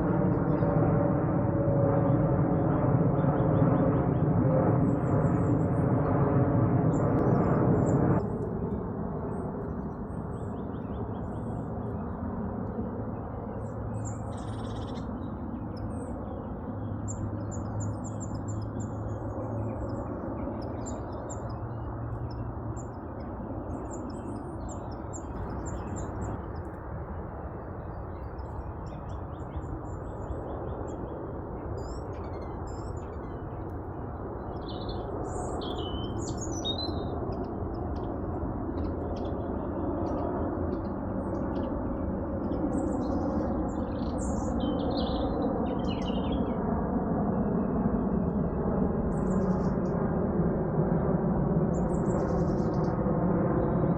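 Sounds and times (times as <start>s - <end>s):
small birds chirping: 13.4s - 26.8s, 27.4s - 41.7s.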